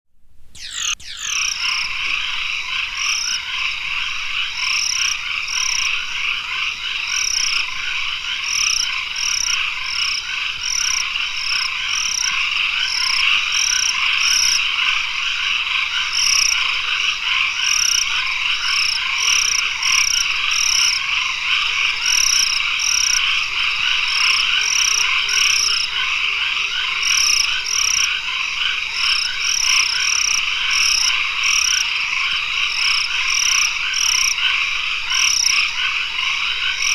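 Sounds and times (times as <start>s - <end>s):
short high-pitched notes: 0.6s - 1.6s
frogs calling: 0.6s - 36.9s.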